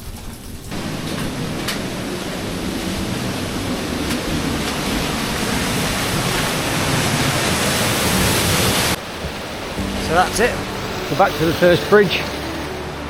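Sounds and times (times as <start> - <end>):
waterfall rushing: 8.5 - 13.0.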